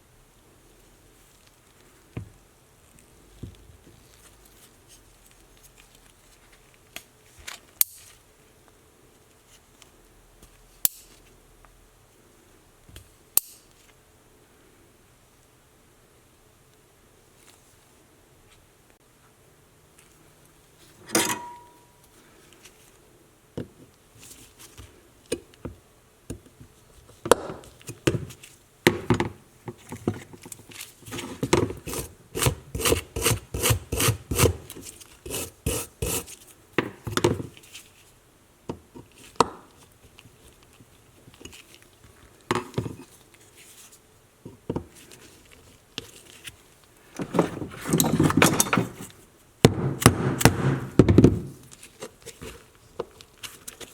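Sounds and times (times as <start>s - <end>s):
hand scraping leather tool: 30.7s - 36.4s.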